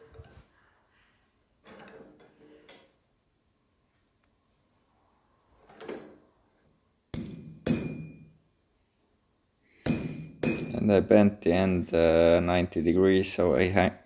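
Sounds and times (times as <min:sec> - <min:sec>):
hammer striking steel on anvil: 0:07.1 - 0:08.4, 0:09.8 - 0:10.9.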